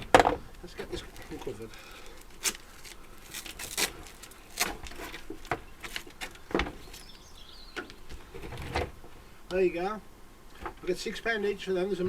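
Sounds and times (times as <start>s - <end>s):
low scraping and rustling: 7.9s - 9.5s.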